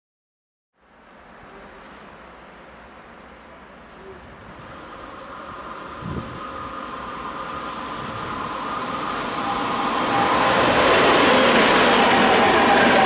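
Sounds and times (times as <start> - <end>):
faint steady whine: 0.8 - 11.2
train running noise: 4.0 - 13.0.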